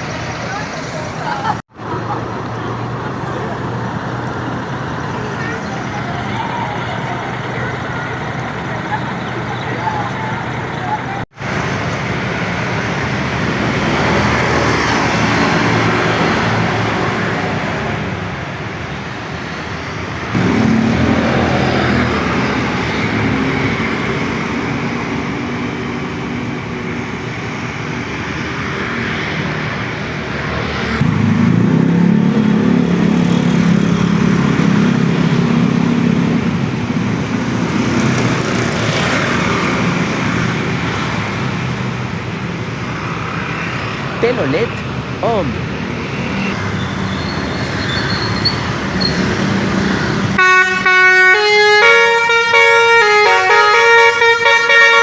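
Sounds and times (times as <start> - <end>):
traffic rushing: 0.0 - 55.0.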